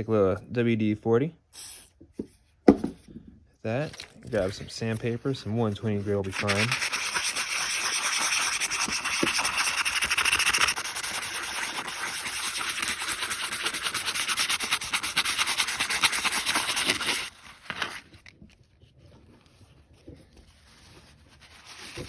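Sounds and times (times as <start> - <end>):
faint handling sounds: 1.6 - 6.7, 17.3 - 22.0
sandpaper scrubbing metal: 5.5 - 17.4.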